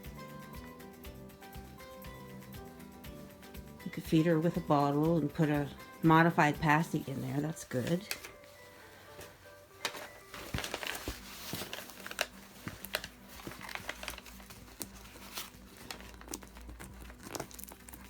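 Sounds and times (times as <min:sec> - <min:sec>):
packaging crinkling: 0:09.8 - 0:18.0.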